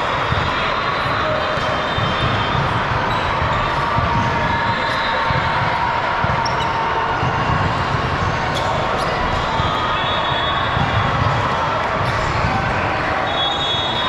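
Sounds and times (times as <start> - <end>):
crowd noise: 0.0 - 14.0
ball bouncing on hardwood court: 5.3 - 9.1.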